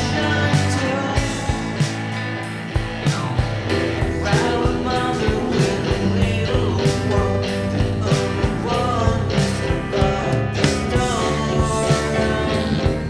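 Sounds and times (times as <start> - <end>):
rock band playing: 0.0 - 13.0.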